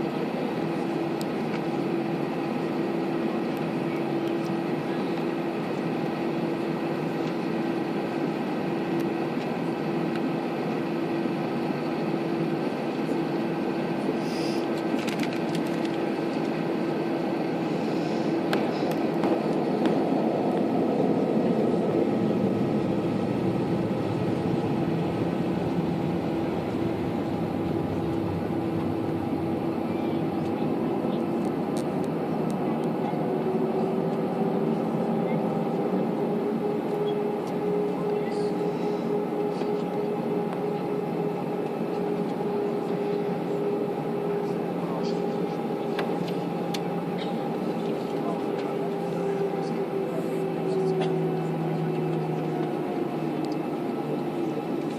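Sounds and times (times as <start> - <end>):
airliner engines humming: 0.0 - 54.9
broad rushing noise: 13.9 - 44.6.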